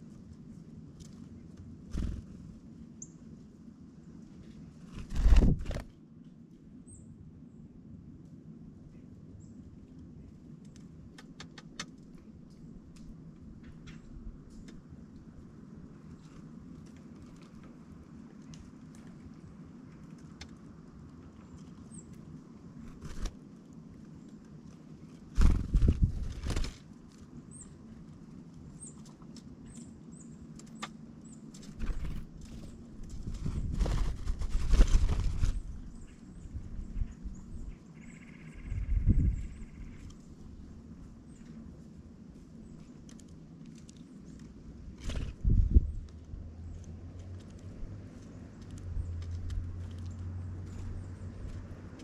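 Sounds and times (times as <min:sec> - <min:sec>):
bird wings flapping: 0:01.9 - 0:02.4, 0:04.8 - 0:06.0, 0:22.8 - 0:23.4, 0:25.2 - 0:27.2, 0:31.6 - 0:35.8, 0:44.9 - 0:45.8.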